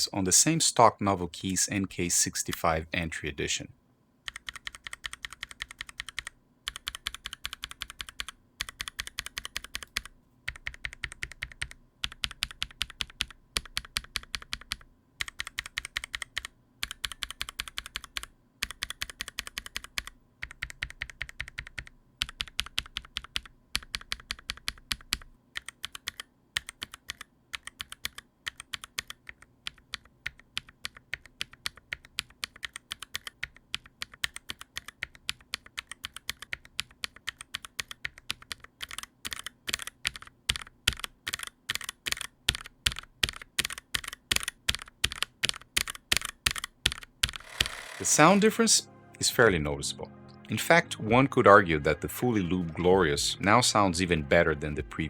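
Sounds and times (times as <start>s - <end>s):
mechanical keyboard clacking: 4.3s - 47.9s.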